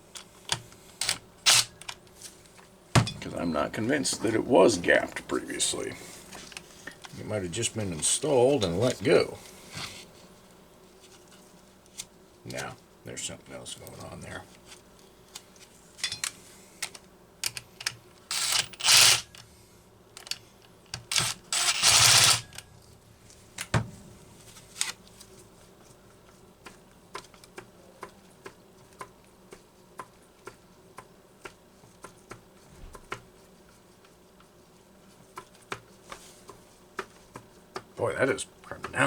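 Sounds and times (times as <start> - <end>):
chainsaw engine grinding: 18.3 - 19.2, 21.1 - 22.5.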